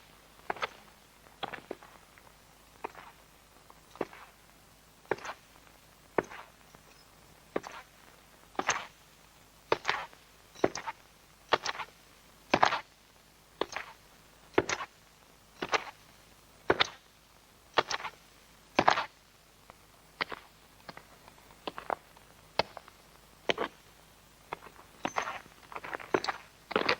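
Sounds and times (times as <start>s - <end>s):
slow footsteps tapping: 0.4s - 6.9s, 18.8s - 26.9s.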